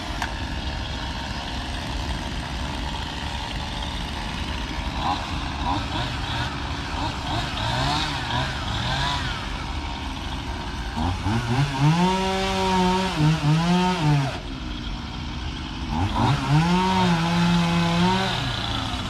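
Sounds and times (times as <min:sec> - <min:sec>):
chainsaw revving and idling: 0:00.0 - 0:19.0.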